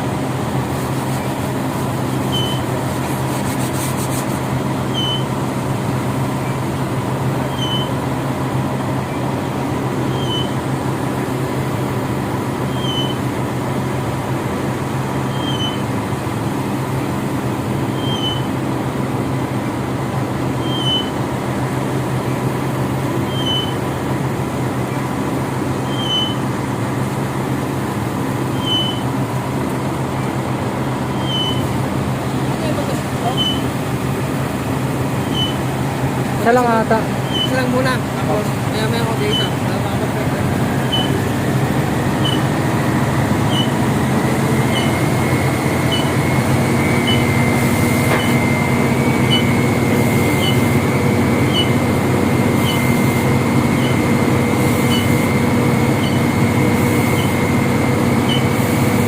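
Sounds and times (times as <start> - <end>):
heavy diesel engine running: 0.0 - 59.0
short high chirp: 10.1 - 10.6, 18.0 - 18.5, 20.6 - 21.1, 25.9 - 26.4, 28.5 - 29.0, 31.1 - 31.7, 33.3 - 33.7, 35.2 - 35.6, 40.9 - 41.2.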